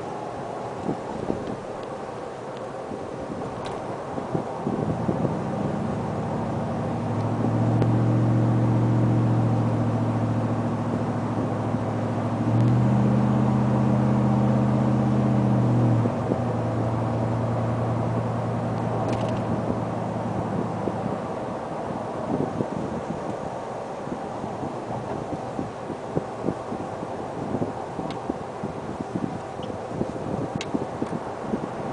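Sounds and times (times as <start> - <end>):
truck exhaust drone: 0.0 - 31.9.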